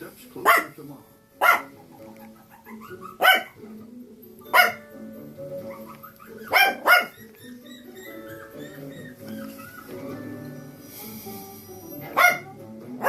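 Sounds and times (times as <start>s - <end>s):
soft background music: 0.0s - 13.0s
dog barking: 0.4s - 0.8s, 1.4s - 3.6s, 4.5s - 4.8s, 5.7s - 7.6s, 12.1s - 12.6s.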